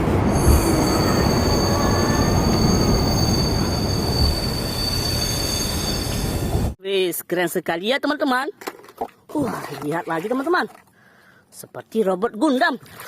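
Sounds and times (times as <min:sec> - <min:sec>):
train rumbling on rails: 0:00.0 - 0:06.8
steel wheels squealing: 0:00.3 - 0:06.8.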